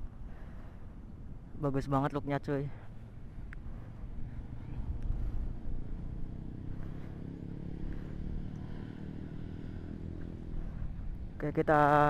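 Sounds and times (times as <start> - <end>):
motorcycle engine idling: 2.8 - 12.0.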